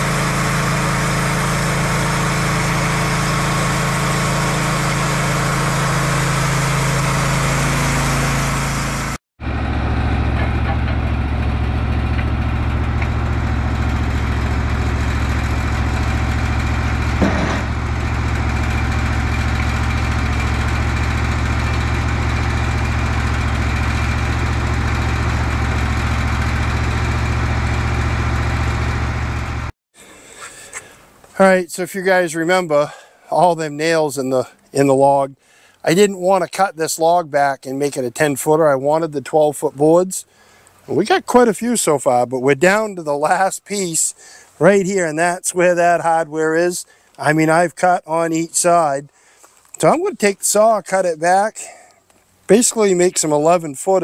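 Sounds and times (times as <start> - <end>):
sawmill engine running: 0.0 - 29.7, 52.5 - 54.0.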